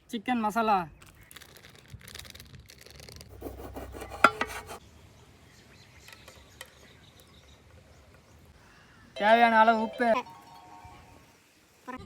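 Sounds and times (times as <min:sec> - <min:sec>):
rustling and scraping: 0:01.5 - 0:04.8.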